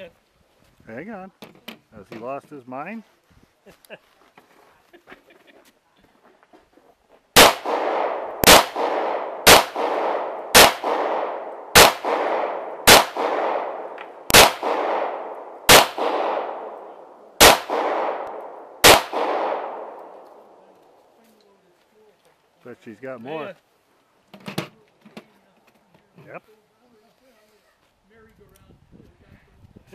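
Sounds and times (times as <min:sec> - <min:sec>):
pistol shots with echo: 0:07.4 - 0:20.6.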